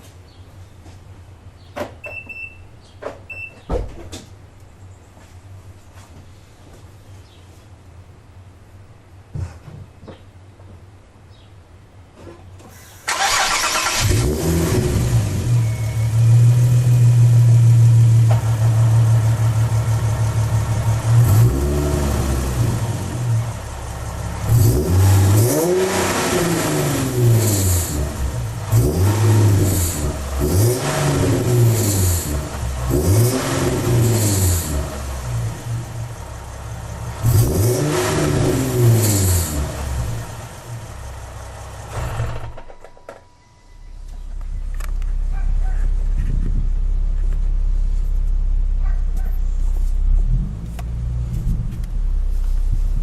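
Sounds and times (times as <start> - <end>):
car engine starting: 12.7 - 43.0, 43.8 - 53.0
car engine idling: 13.1 - 27.1, 33.6 - 37.7, 39.6 - 42.7
car engine revving: 13.1 - 41.1.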